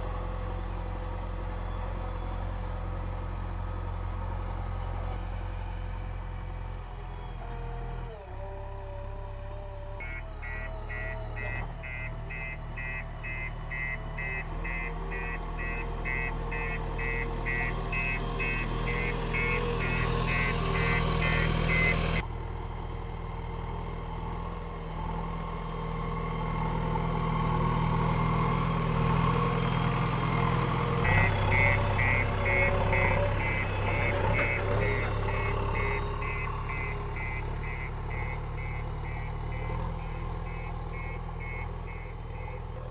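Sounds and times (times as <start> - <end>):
diesel engine running under load: 0.0 - 42.9
reversing alarm beeping: 10.0 - 22.2, 31.0 - 42.8.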